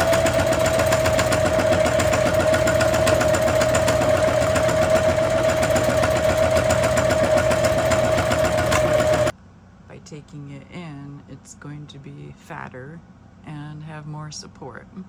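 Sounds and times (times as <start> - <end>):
sewing machine running: 0.0 - 9.3.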